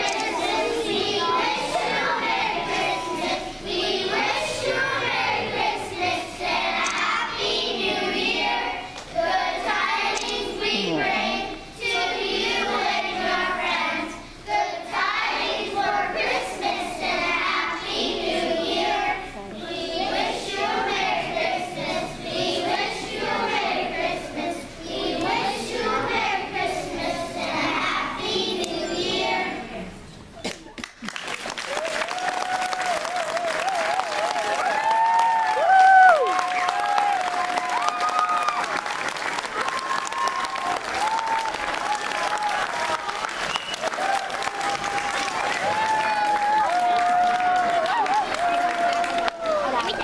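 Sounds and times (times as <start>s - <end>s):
young children singing: 0.0s - 30.1s.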